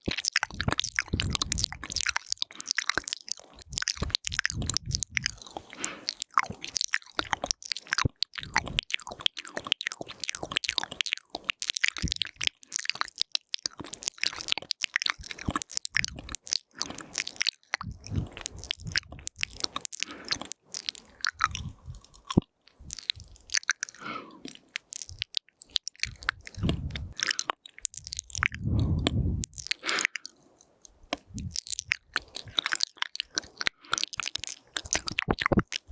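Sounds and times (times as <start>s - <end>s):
wet mouth clicks and lip smacks: 0.0s - 35.9s
longer low mouth sound: 0.4s - 2.1s, 3.6s - 6.0s, 17.8s - 20.5s, 21.1s - 25.3s, 26.0s - 30.1s, 31.1s - 32.6s.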